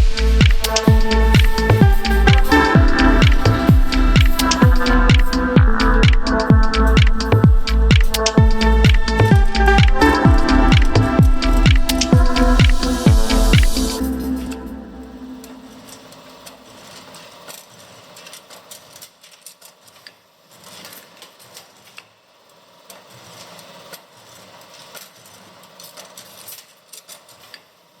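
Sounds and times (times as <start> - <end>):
bending machine humming: 0.0 - 16.8
sharp mechanical clicks and knocks: 0.1 - 14.0.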